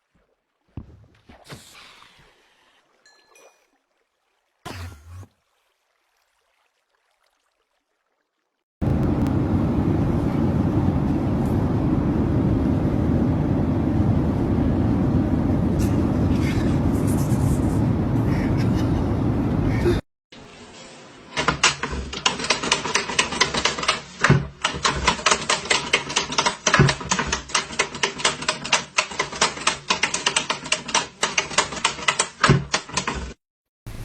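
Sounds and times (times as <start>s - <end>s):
steady low rumbling noise: 8.8s - 20.0s.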